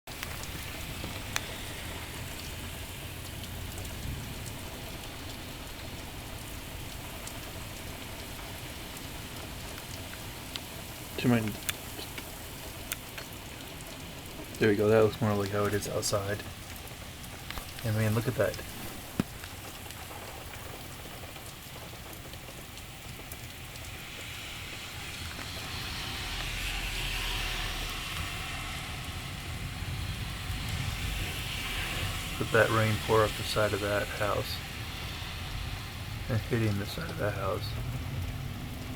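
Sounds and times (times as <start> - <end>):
heavy rain falling: 0.1 - 38.9
hiss with low rumble: 0.1 - 38.9.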